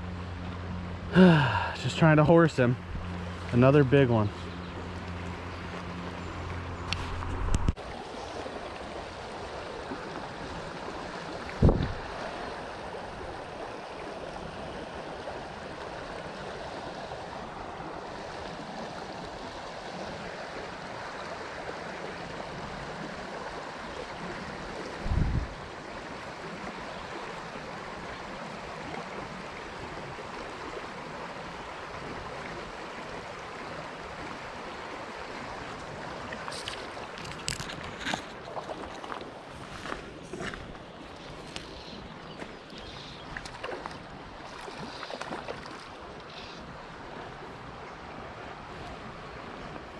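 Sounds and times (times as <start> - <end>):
stream water rushing: 0.0 - 49.9.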